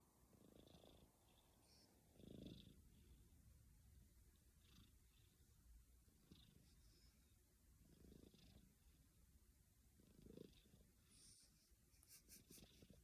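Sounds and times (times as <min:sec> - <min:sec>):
cat snoring faintly: 0:00.0 - 0:03.4, 0:04.3 - 0:09.1, 0:09.9 - 0:13.0.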